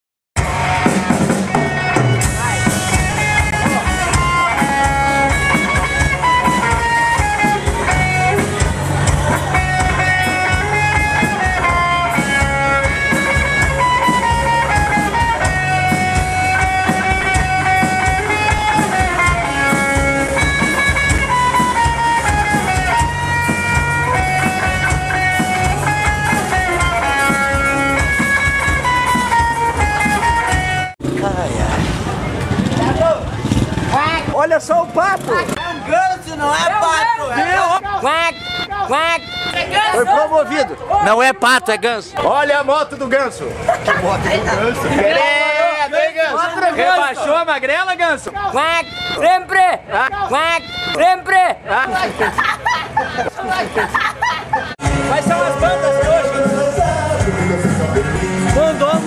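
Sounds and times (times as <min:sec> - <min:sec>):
guitar melody: 0:00.4 - 0:32.8, 0:36.6 - 0:41.1, 0:48.3 - 0:51.2, 0:54.8 - 0:59.0
drum kit: 0:00.4 - 0:35.6, 0:54.8 - 0:59.0
bass: 0:00.4 - 0:59.0.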